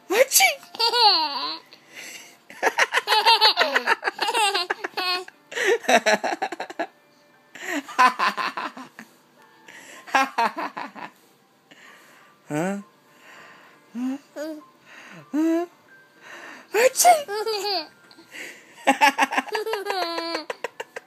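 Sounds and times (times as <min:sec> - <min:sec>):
baby giggling: 0:02.8 - 0:05.3, 0:16.8 - 0:17.9, 0:19.4 - 0:21.0.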